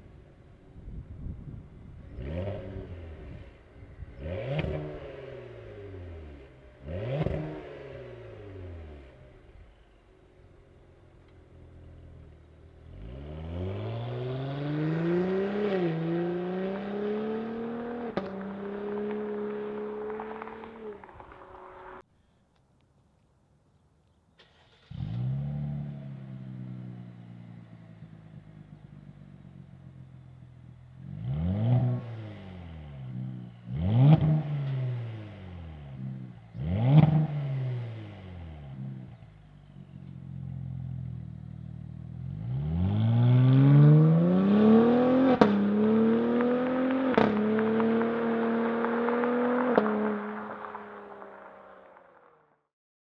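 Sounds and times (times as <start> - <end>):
car engine revving: 2.0 - 10.6, 11.2 - 22.0, 24.4 - 52.3
exhaust cracks on gear shifts: 18.1 - 22.0.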